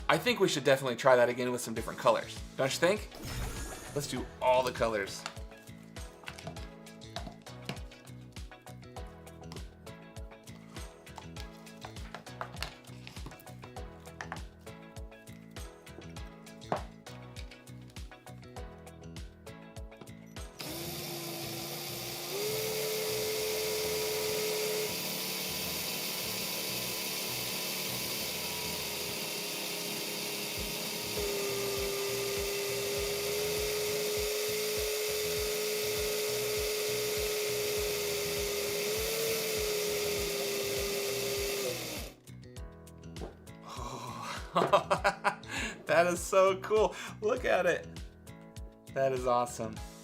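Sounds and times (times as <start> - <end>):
music with steady beat: 2.4 - 20.6, 30.5 - 50.0
power drill whining: 3.1 - 5.4, 20.5 - 42.2.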